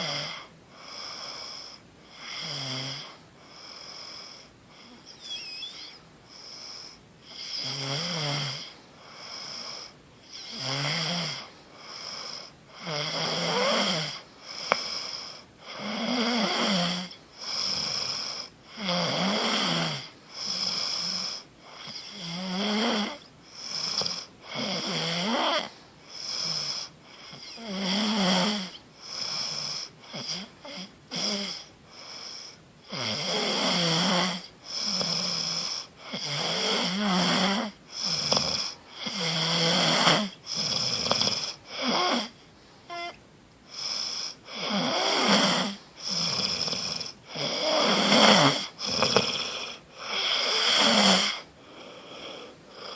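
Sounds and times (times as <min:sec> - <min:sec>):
person snoring: 0:00.0 - 0:52.9.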